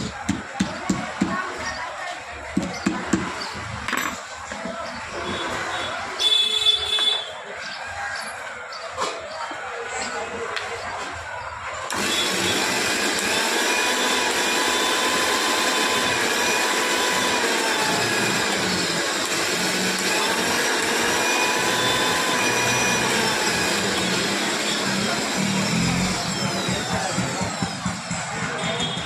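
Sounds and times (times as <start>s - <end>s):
mixer grinder motor whirring: 11.9s - 29.0s.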